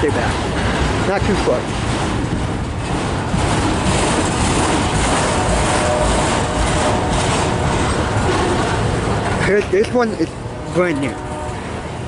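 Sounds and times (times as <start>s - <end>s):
freight train wheels rumbling: 0.0s - 12.0s.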